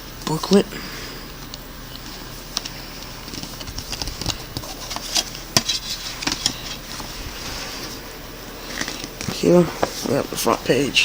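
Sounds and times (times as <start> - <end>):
paper booklet rustling: 2.0 - 10.8.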